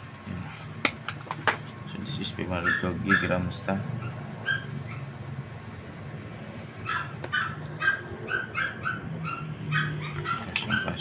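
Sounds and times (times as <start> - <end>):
animal yelping: 2.6 - 5.2, 6.8 - 11.0.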